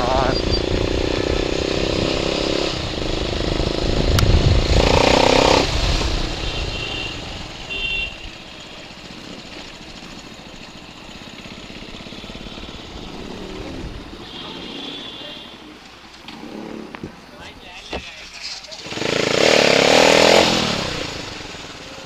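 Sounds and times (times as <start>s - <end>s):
motorcycle engine revving: 0.0s - 17.1s, 18.8s - 22.0s.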